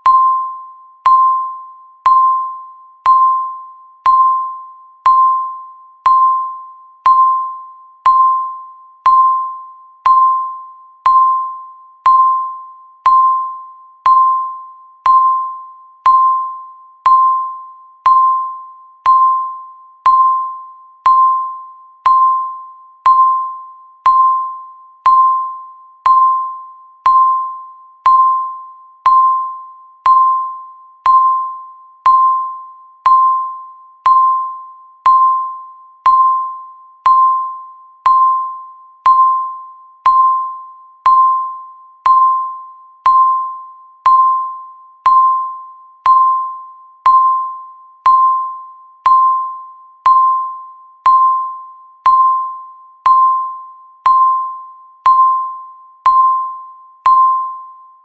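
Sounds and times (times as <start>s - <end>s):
timer beeping: 0.0s - 58.0s.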